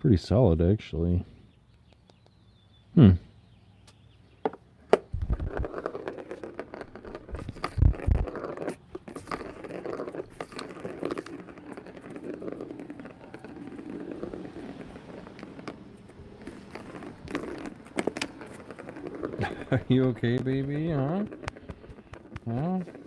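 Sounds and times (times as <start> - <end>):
plastic toy clicking and scraping: 5.2 - 23.0.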